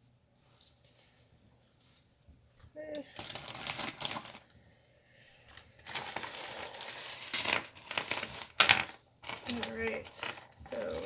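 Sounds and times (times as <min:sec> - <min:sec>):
beads clinking and rattling: 0:05.8 - 0:11.0.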